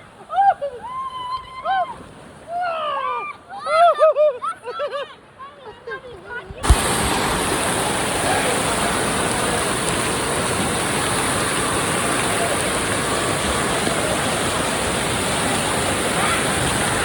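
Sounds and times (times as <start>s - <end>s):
distant voices: 6.6s - 17.0s
rushing water: 6.6s - 17.0s.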